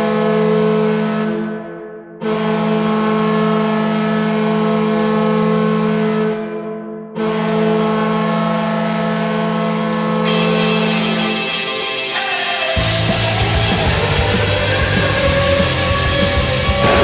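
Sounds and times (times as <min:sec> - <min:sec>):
goal horn blasts: 0:02.2 - 0:06.4, 0:16.8 - 0:17.0.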